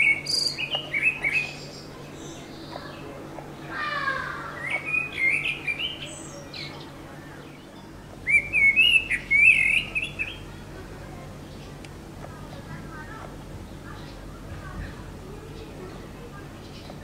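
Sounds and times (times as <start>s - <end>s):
blackbird singing: 0.0s - 10.6s.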